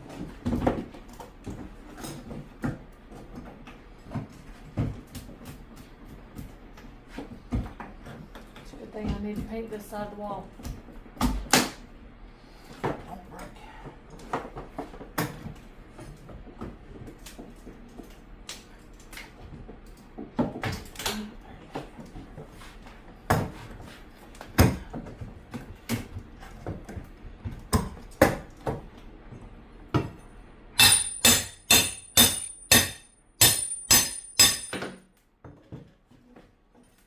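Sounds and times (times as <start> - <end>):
hammer strikes with metallic ring: 30.8 - 35.0.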